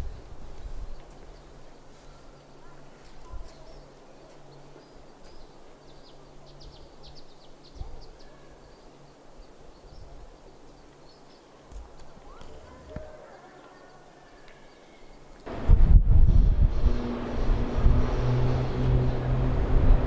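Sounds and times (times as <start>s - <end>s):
small birds chirping: 0.0s - 15.7s, 16.6s - 20.0s
low steady hum: 15.5s - 20.0s.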